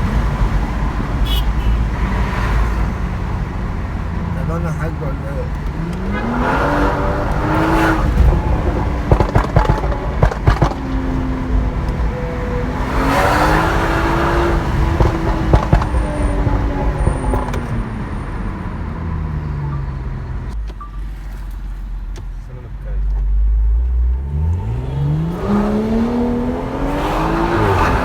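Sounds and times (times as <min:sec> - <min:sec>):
car engine revving: 0:00.0 - 0:28.0
exhaust pops and crackles: 0:04.4 - 0:18.8.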